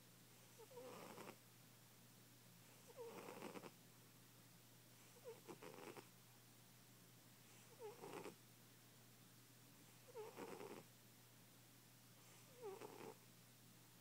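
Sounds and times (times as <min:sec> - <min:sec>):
cat snoring: 0:00.5 - 0:01.4, 0:02.7 - 0:03.8, 0:05.0 - 0:06.1, 0:07.5 - 0:08.4, 0:10.0 - 0:10.9, 0:12.2 - 0:13.2.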